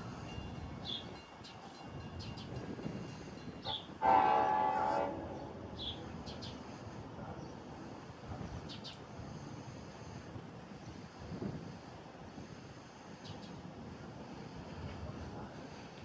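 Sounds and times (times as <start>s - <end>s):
train horn blast: 3.7s - 5.6s.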